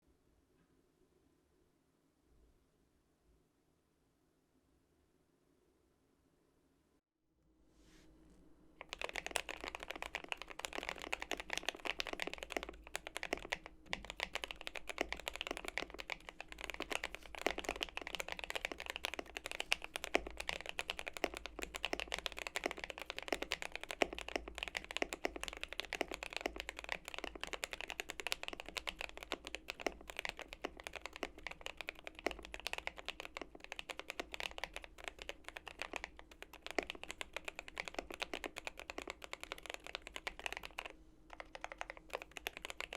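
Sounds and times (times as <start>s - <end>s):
mechanical keyboard typing: 8.8s - 42.9s.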